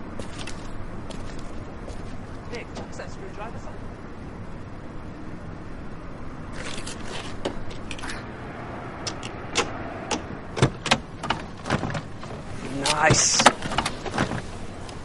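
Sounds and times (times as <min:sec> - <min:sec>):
sharp lock clicks: 0:09.1 - 0:12.1.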